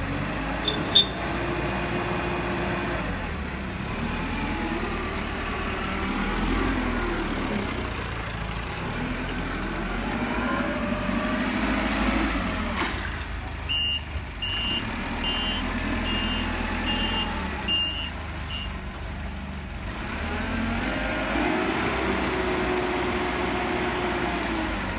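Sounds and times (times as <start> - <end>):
forklift engine running: 0.0 - 24.9
reversing alarm beeping: 13.7 - 19.5.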